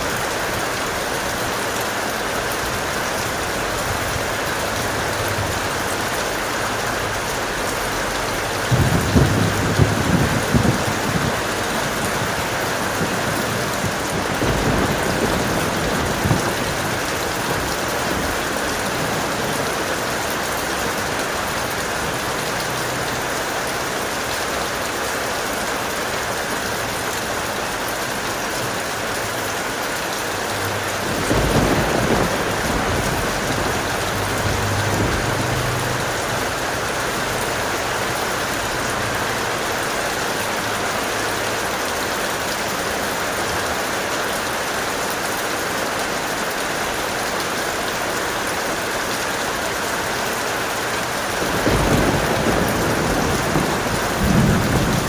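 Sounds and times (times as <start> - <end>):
heavy rain: 0.0 - 55.0
thunder rumbling: 6.7 - 22.4, 30.4 - 40.1, 51.2 - 55.0.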